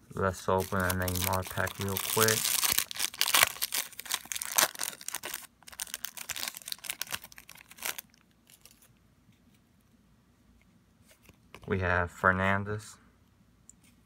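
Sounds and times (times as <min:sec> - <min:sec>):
foil wrapper tearing and crinkling: 0:00.5 - 0:08.8.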